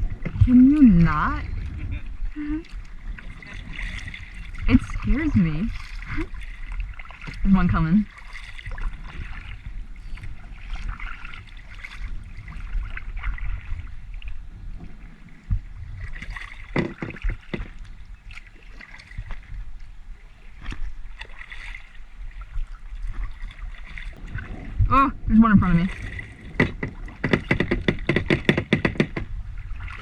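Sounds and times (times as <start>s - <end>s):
low rumble: 0.0s - 8.1s, 24.1s - 27.2s
paddle strokes in water: 0.0s - 30.0s
water splashing and dripping: 0.0s - 30.0s
sharp knocks: 16.7s - 17.8s, 26.4s - 29.4s.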